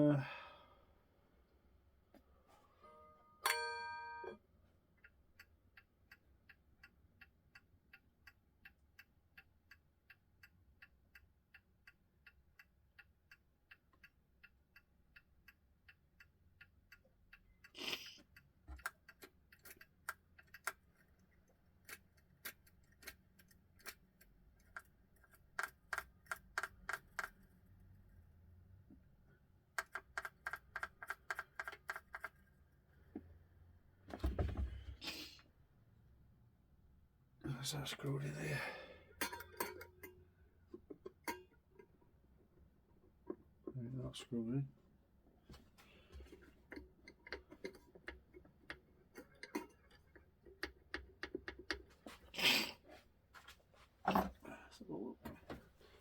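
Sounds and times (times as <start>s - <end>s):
clock ticking faintly: 4.9s - 27.4s.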